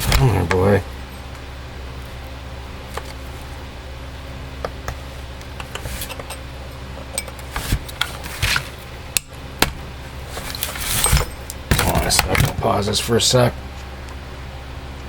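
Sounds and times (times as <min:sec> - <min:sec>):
steady low hum: 0:00.0 - 0:15.0
tools and parts clicking and tapping: 0:05.6 - 0:06.4, 0:07.1 - 0:08.6, 0:10.4 - 0:12.7
knocks and scrapes: 0:09.7 - 0:12.7.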